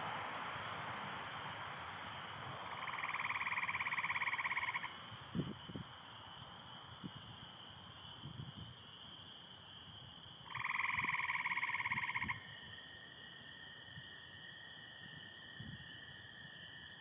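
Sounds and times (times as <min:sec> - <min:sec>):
frogs peeping: 0:01.2 - 0:06.2, 0:10.4 - 0:12.8.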